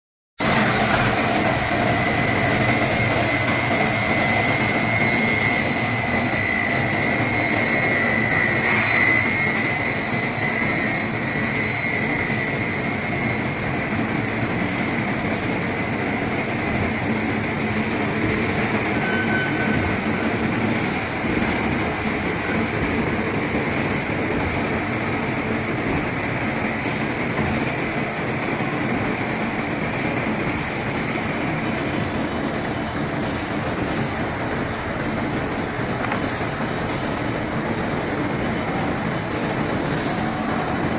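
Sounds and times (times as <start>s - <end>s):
faint machine whine: 2.4s - 13.8s, 16.8s - 25.4s.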